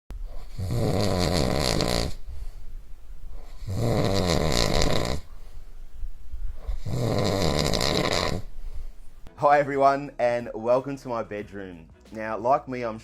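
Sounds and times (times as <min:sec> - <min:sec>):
person snoring loudly: 0:00.3 - 0:02.5, 0:03.3 - 0:05.4, 0:06.6 - 0:08.8.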